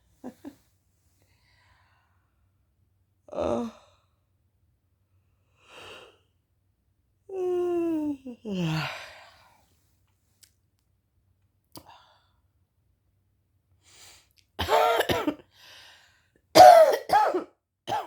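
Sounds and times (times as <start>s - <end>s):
woman yawning: 3.3s - 3.8s
woman coughing: 14.6s - 15.4s, 16.6s - 18.0s.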